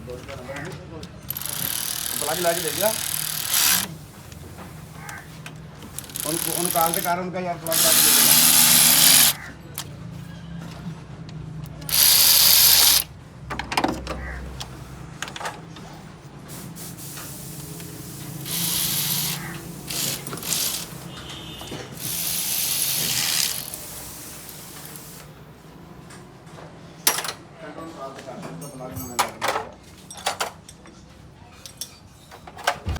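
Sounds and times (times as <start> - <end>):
ratchet clicks: 1.0 - 4.4, 5.8 - 9.9, 11.7 - 13.1, 17.8 - 21.0, 22.0 - 25.1
loud bursts of hiss: 6.0 - 9.4, 11.9 - 13.0, 16.5 - 21.1, 22.0 - 25.3.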